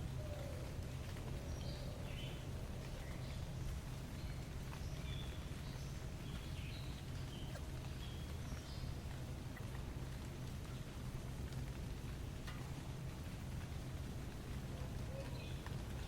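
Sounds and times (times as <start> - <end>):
steady low rumble: 0.0 - 16.0
birds chirping: 0.2 - 10.8, 14.4 - 16.0.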